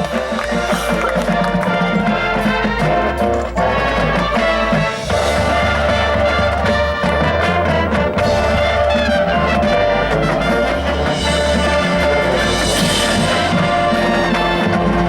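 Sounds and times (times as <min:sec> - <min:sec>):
marching band playing brass: 0:00.0 - 0:15.0.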